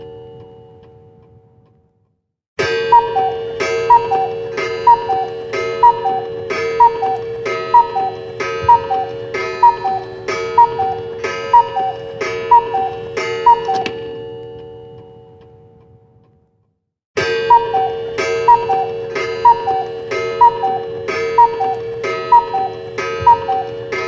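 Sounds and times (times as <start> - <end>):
clock striking: 0.0 - 24.0
ringing tone: 2.8 - 15.3, 17.4 - 24.0
two-note cuckoo call: 2.9 - 14.0, 17.5 - 24.0.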